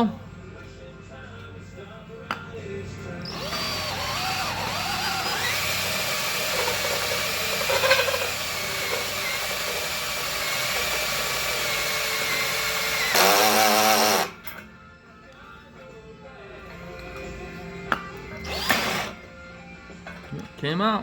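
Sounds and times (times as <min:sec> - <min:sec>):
cordless drill cutting through metal: 0:03.2 - 0:14.4, 0:18.4 - 0:19.2.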